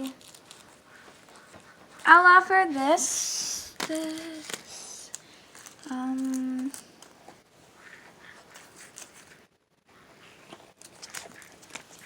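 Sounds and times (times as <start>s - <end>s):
clicks and rustling of items: 0.0s - 2.1s, 3.7s - 7.4s, 10.4s - 12.0s.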